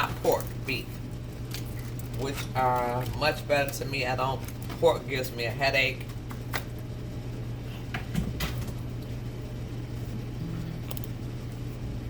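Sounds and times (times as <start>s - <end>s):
low hum: 8.8s - 12.0s.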